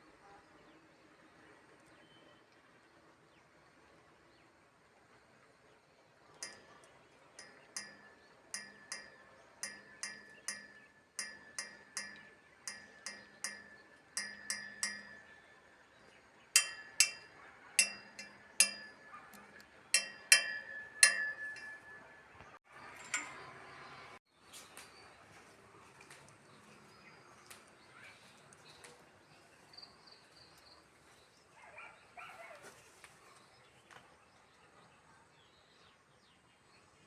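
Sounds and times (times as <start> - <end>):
ringing taps on small object: 7.4 - 15.5, 16.6 - 22.5.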